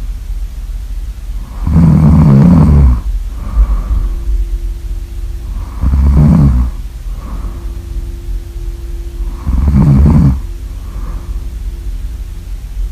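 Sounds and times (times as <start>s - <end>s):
quiet breathing: 1.3s - 12.9s
person snoring loudly: 1.4s - 4.2s, 5.4s - 7.8s, 9.2s - 11.4s.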